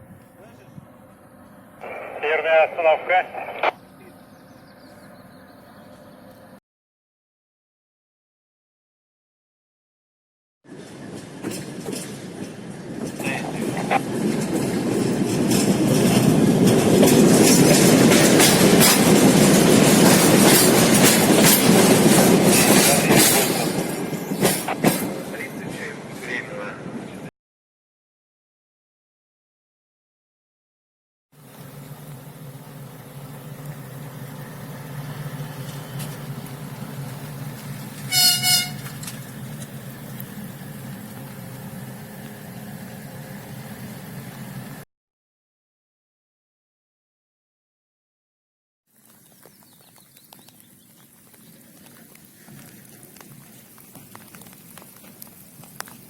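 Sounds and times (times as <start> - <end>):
train wheels clattering on rails: 10.7 - 26.0, 35.2 - 40.0
horn toots: 38.1 - 38.9.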